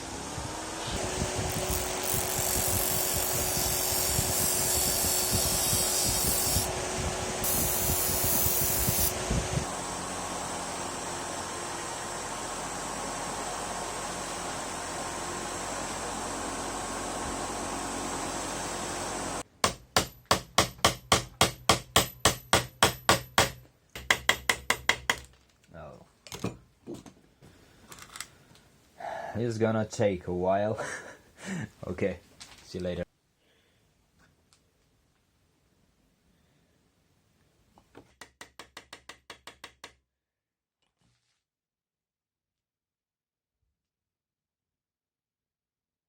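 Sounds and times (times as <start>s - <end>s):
grinding or sanding: 0.0s - 19.4s
power tool motor running: 0.0s - 19.4s
high hiss: 0.9s - 6.8s, 7.4s - 9.4s
steady hiss: 7.4s - 9.2s
hand hammer blows: 19.6s - 25.2s.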